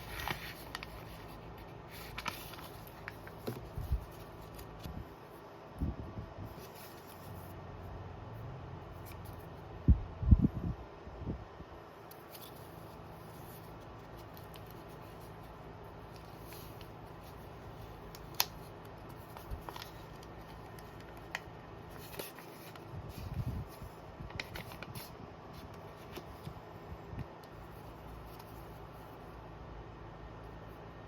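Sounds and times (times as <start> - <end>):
packaging rustling: 0.0 - 4.9, 12.2 - 26.5.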